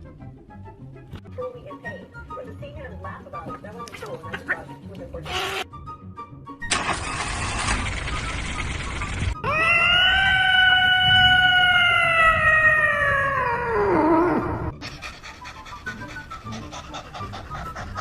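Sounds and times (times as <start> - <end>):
animal howling: 9.4 - 14.8.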